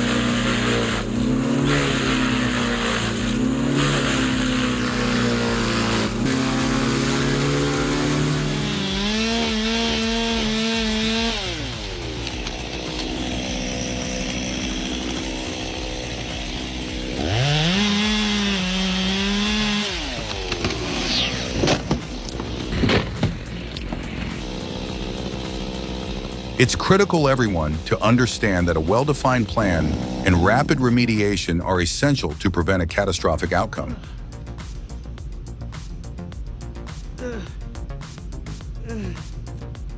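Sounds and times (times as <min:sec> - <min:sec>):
small engine revving: 0:00.0 - 0:31.1.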